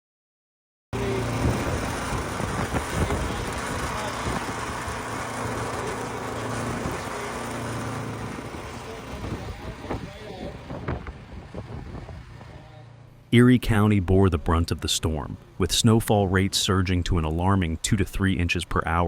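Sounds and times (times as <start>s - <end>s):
vehicle engine running: 1.0s - 15.7s.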